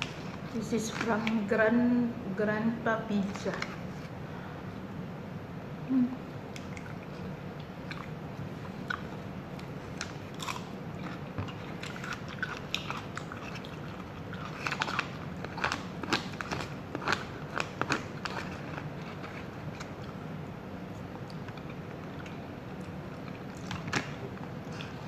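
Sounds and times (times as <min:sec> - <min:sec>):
steady low hum: 0:00.0 - 0:25.0
person biting and chewing food: 0:06.5 - 0:20.2.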